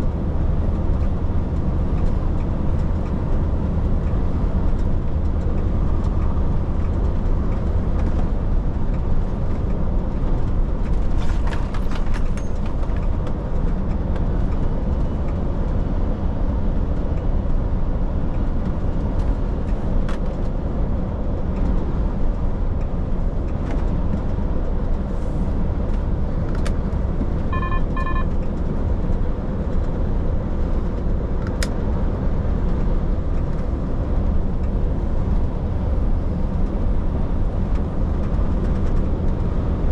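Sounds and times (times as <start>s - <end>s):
truck engine and road rumble: 0.0s - 39.9s
short electronic beeps: 27.5s - 28.4s.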